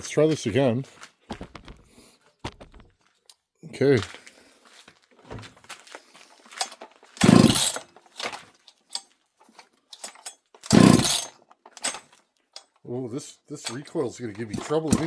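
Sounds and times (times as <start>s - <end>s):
handling clicks and knocks: 6.5s - 12.9s, 13.6s - 15.0s
chainsaw recoil starter pulls: 6.6s - 12.8s, 13.6s - 15.0s.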